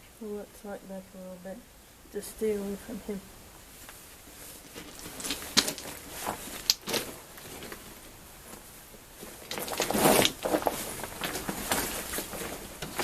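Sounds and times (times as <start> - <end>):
footsteps on rocky ground: 4.4 - 13.0.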